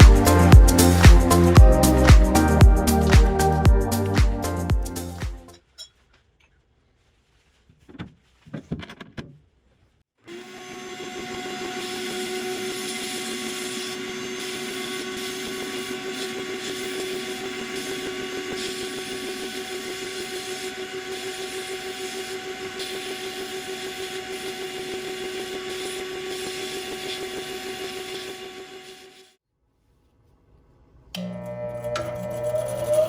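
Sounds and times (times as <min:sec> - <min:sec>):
electric power tool running: 0:10.3 - 0:29.1, 0:31.2 - 0:33.0.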